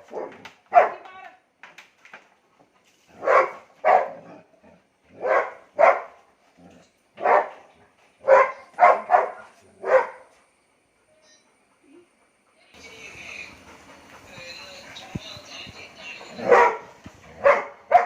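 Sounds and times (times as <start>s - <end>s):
dog barking: 0.0s - 1.1s, 3.2s - 4.3s, 5.2s - 6.2s, 7.2s - 10.4s, 16.4s - 18.0s.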